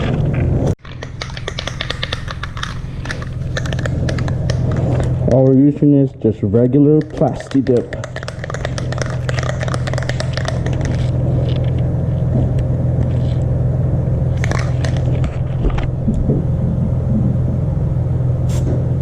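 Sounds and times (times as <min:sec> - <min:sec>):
motor rumbling hum: 0:00.0 - 0:19.0.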